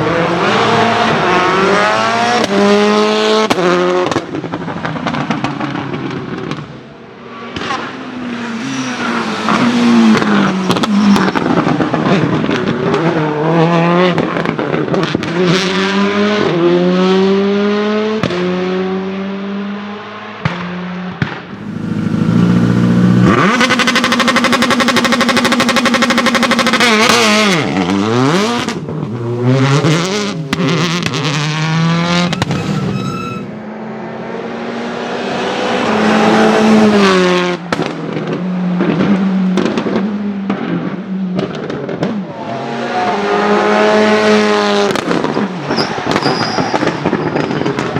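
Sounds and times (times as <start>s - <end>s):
rally car engine revving: 0.0s - 47.0s
exhaust pops and bangs: 3.5s - 6.8s, 37.7s - 42.3s, 44.9s - 47.9s.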